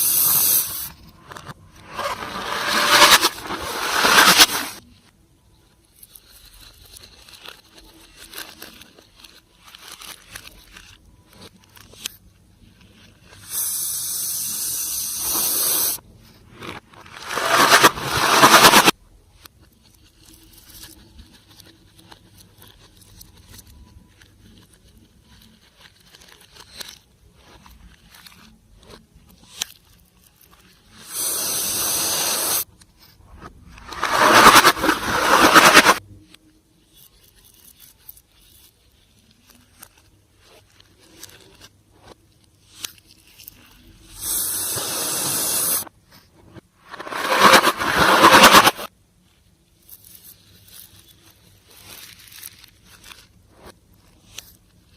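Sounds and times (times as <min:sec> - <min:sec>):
steady hiss: 0:00.0 - 0:01.0.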